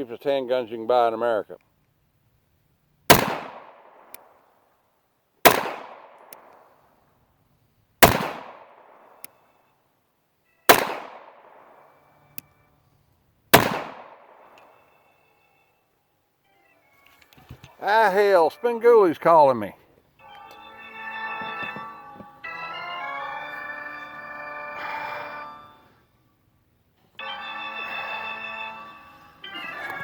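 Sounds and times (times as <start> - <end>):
pistol shots echoing: 3.1 - 4.4, 5.4 - 6.7, 8.0 - 9.3, 10.7 - 12.0, 13.5 - 14.8.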